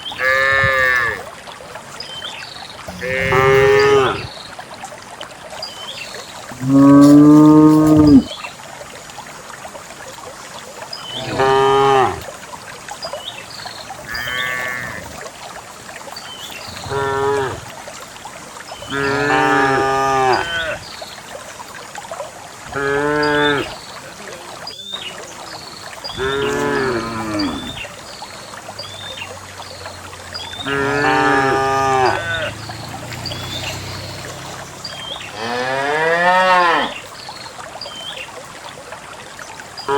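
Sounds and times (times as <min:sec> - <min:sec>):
cows mooing: 0:00.2 - 0:01.2, 0:02.9 - 0:04.3, 0:06.6 - 0:08.3, 0:11.2 - 0:12.3, 0:14.1 - 0:15.1, 0:16.8 - 0:17.6, 0:18.9 - 0:20.8, 0:22.7 - 0:23.7, 0:26.1 - 0:27.8, 0:30.6 - 0:37.0.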